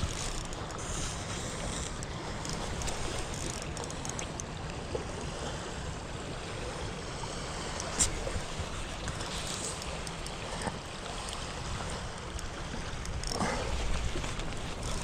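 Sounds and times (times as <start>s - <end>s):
faint ticks: 1.6s - 4.8s, 9.0s - 11.4s, 12.0s - 15.0s.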